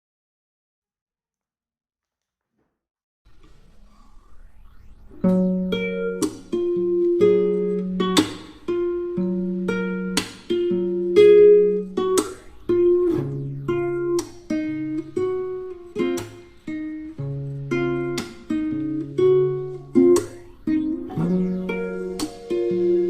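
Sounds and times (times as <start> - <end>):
plucked acoustic guitar melody: 5.2 - 23.0
bass notes: 10.8 - 16.2, 17.1 - 23.0.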